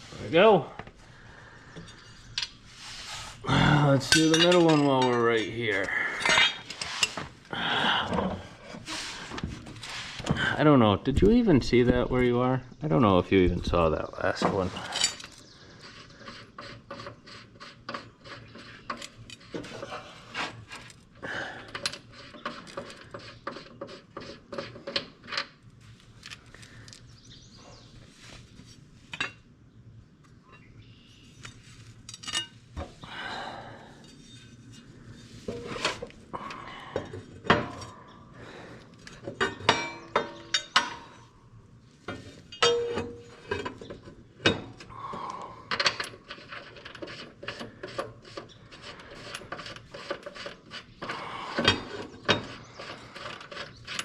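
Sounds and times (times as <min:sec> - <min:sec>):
steel tools clinking: 0:03.8 - 0:07.2, 0:14.8 - 0:15.4, 0:31.5 - 0:32.6, 0:39.0 - 0:41.1, 0:42.4 - 0:44.9.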